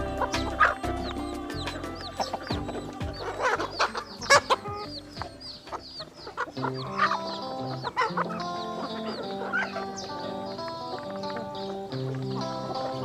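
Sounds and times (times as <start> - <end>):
background music with held notes: 0.0 - 13.0
chickens clucking: 0.0 - 13.0
high chirping calls: 0.0 - 13.0.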